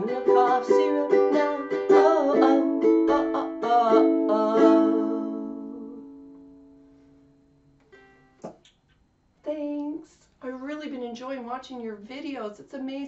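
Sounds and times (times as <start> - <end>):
ukulele strumming: 0.0 - 6.5.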